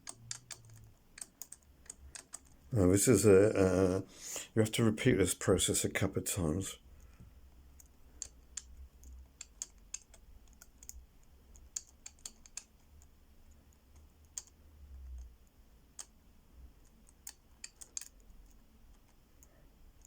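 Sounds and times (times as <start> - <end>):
padlock wheels clicking: 0.0 - 2.6.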